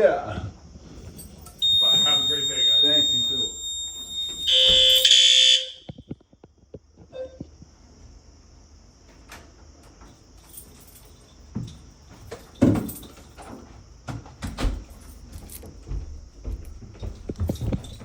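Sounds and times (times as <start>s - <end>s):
footsteps: 14.9s - 18.0s.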